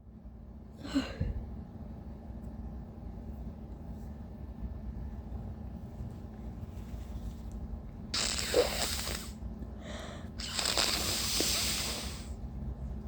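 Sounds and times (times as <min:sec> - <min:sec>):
woman gasping breathily: 0:09.8 - 0:10.4.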